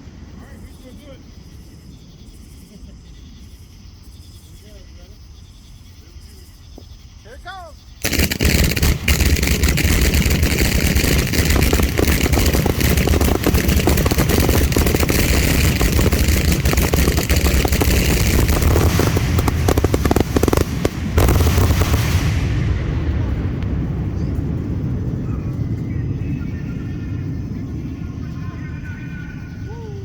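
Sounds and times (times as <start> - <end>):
fireworks bangs and crackles: 8.0 - 30.0.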